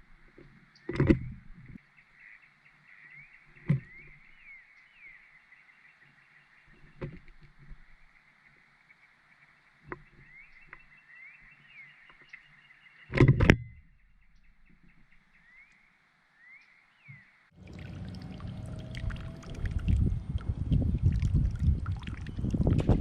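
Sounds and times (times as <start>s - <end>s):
distant bird chirps: 0.0s - 23.0s.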